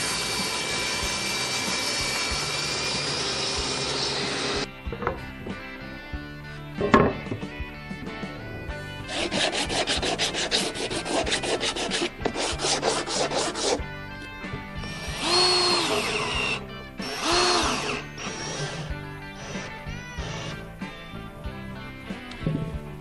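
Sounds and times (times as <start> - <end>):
handsaw cutting wood: 0.0 - 4.7, 9.0 - 13.9, 14.8 - 21.0
power tool whine: 0.0 - 4.7, 14.8 - 21.3
quiet background music: 0.0 - 23.0.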